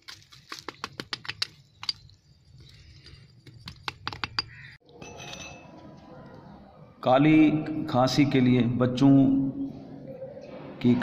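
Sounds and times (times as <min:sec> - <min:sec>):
small hard objects clicking: 0:00.0 - 0:04.8.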